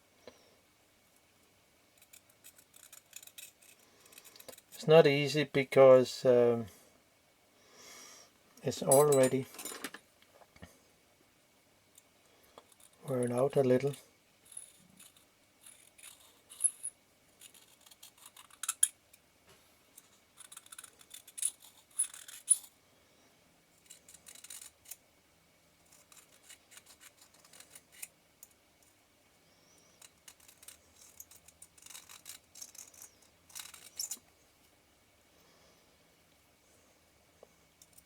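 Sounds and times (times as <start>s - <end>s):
metal tools clicking and scraping: 8.8s - 10.0s, 12.0s - 19.0s, 20.0s - 22.7s, 30.0s - 34.2s.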